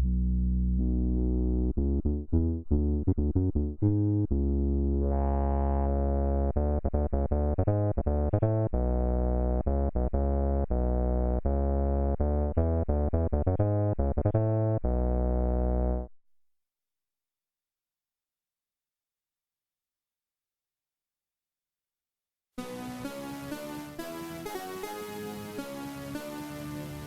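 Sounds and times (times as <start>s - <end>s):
deep sustained bass: 0.0s - 16.0s
synthesizer playing fast notes: 22.6s - 27.0s.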